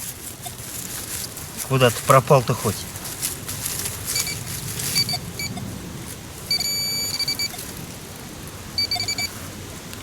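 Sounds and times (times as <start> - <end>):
metal detector beeping: 4.1 - 5.7, 6.5 - 7.7, 8.8 - 9.4.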